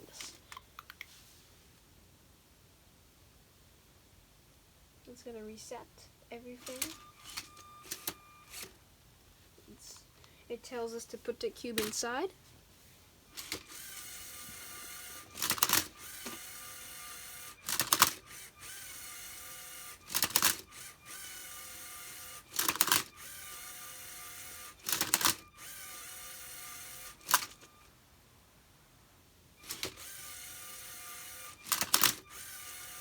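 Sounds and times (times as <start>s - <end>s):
robot motors whirring: 13.4s - 27.8s, 29.6s - 33.0s.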